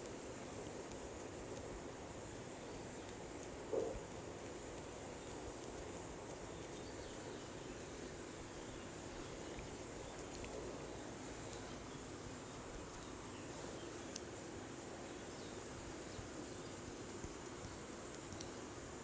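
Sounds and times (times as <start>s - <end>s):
soft little clicks: 0.0s - 14.6s, 15.5s - 19.0s
faint steady background noise: 0.0s - 19.0s.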